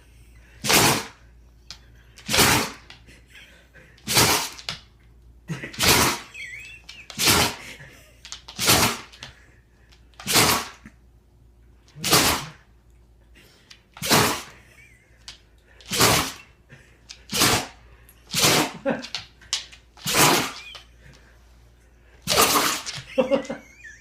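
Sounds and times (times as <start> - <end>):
dog sneezing: 0.6 - 1.2, 5.8 - 6.3, 7.2 - 7.6, 8.6 - 9.2, 10.2 - 10.8, 12.0 - 12.6, 14.0 - 14.6, 17.3 - 18.8, 20.0 - 20.8, 22.3 - 23.0.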